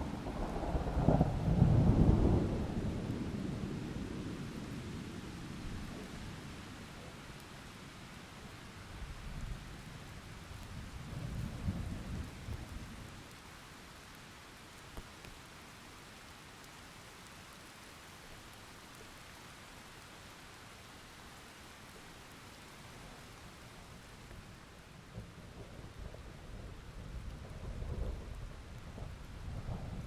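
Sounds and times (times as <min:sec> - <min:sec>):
low roll of thunder: 0:00.0 - 0:07.2, 0:10.7 - 0:13.2, 0:25.0 - 0:30.0
steady rain: 0:00.0 - 0:30.0.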